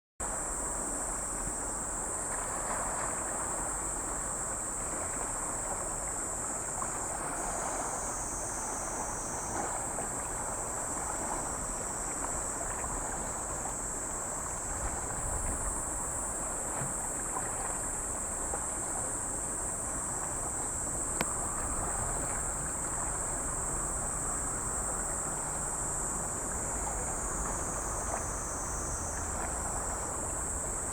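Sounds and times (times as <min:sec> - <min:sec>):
wind and small waves: 0:00.2 - 0:30.9
high-pitched hiss: 0:06.4 - 0:12.6, 0:19.2 - 0:30.9.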